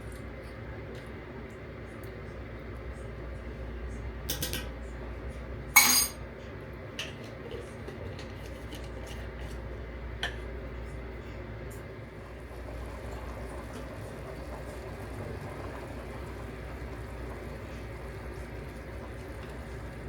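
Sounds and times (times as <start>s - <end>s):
metal utensils clinking: 5.8s - 6.2s.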